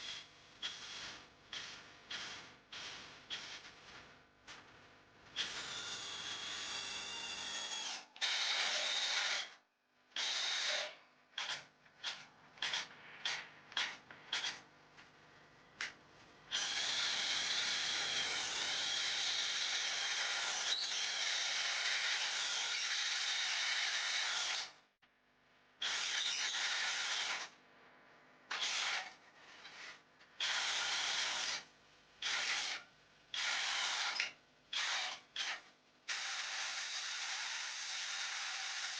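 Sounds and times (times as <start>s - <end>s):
cordless drill motor running: 5.4s - 9.5s, 10.2s - 11.0s, 16.5s - 24.7s, 36.1s - 38.9s.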